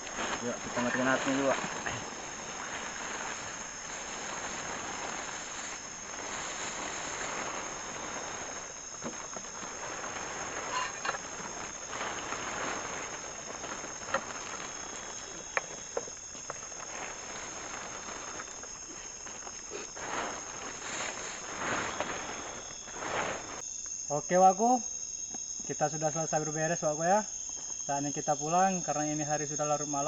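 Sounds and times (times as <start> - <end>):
crickets trilling: 0.0 - 30.0.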